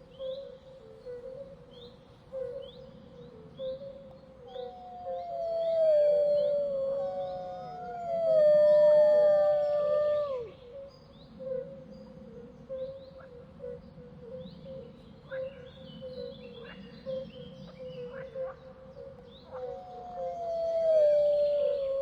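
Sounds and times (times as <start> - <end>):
wolves howling: 4.5 - 10.8, 19.5 - 22.0.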